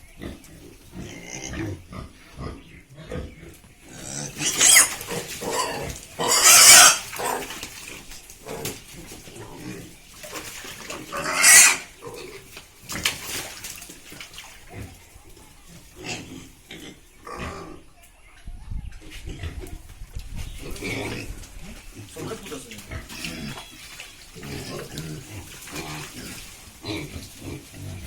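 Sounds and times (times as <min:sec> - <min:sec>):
quiet pig noises: 0:00.0 - 0:28.0
pigs squealing: 0:00.2 - 0:13.0.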